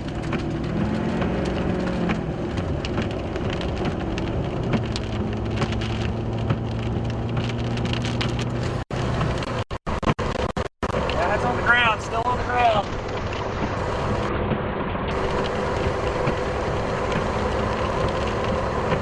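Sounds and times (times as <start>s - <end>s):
heavy rain hitting a vehicle: 0.0s - 19.0s.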